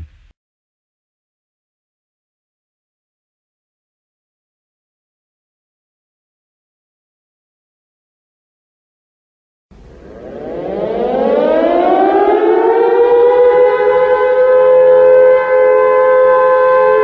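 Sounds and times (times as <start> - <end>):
air-raid siren wailing: 9.8 - 17.0.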